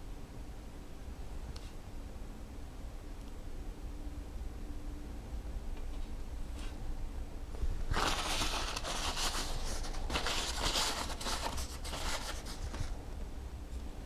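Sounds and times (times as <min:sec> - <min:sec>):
hands rustling and rubbing parts: 0:07.8 - 0:13.0.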